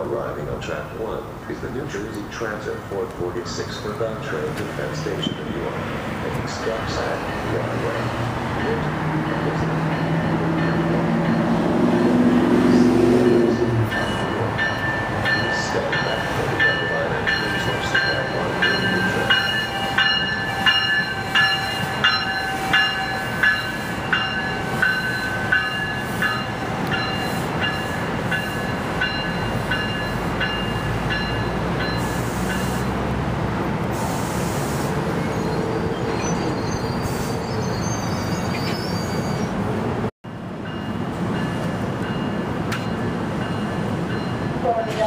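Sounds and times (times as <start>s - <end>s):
train wheels squealing: 34.0s - 39.6s.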